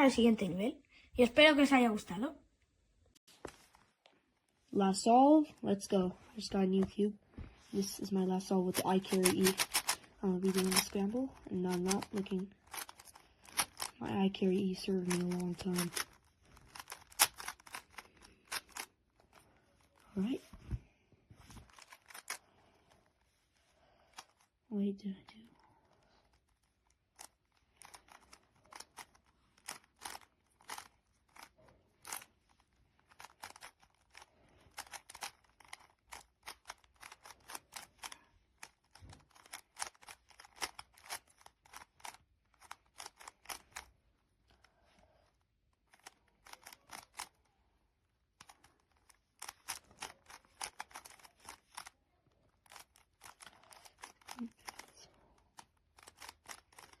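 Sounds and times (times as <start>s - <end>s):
speed cube plastic clicks: 7.8s - 20.5s, 21.5s - 22.4s, 24.1s - 24.5s, 25.9s - 43.9s, 45.8s - 47.5s, 48.3s - 57.0s.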